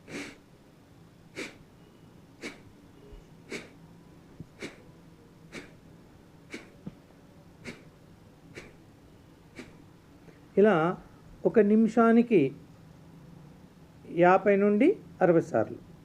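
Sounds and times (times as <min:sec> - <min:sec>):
forceful nasal exhalations: 0:00.0 - 0:00.5, 0:01.3 - 0:01.6, 0:02.4 - 0:02.7, 0:03.4 - 0:03.8, 0:04.5 - 0:04.9, 0:05.5 - 0:05.8, 0:06.5 - 0:07.0, 0:07.6 - 0:08.8, 0:09.5 - 0:09.8.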